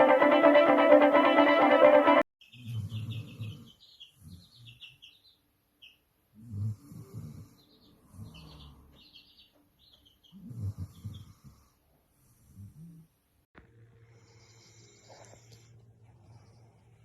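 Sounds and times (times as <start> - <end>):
birds chirping: 2.4 - 6.0, 7.6 - 11.3
dog snoring: 6.4 - 8.7, 10.4 - 11.7.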